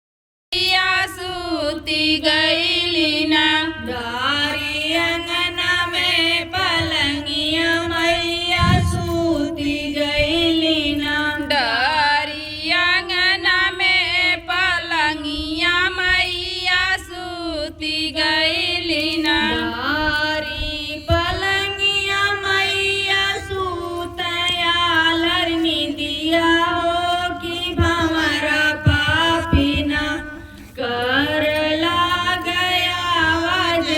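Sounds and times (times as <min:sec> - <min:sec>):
woman singing folk song: 0:00.6 - 0:33.9
low thumps: 0:08.6 - 0:10.7.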